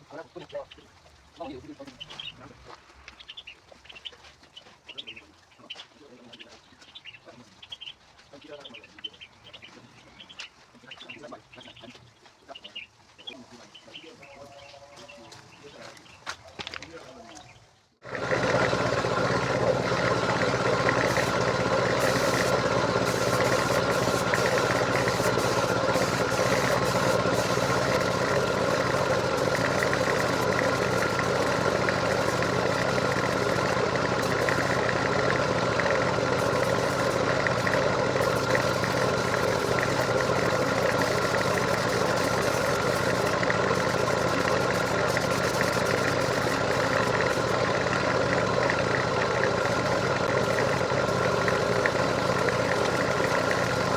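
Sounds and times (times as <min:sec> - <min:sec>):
machine humming with hiss: 0:18.1 - 0:53.9.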